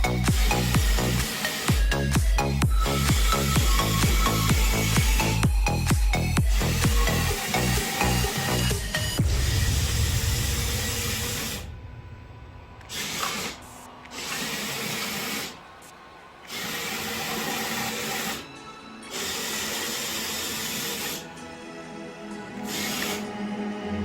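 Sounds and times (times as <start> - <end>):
small electric motors whirring: 0.0 - 9.2, 12.9 - 21.4, 22.6 - 23.4.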